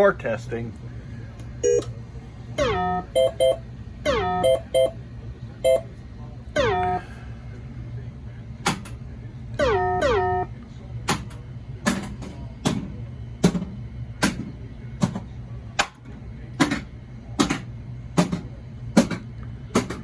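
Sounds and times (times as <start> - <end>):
descending electronic tones: 2.6 - 5.0.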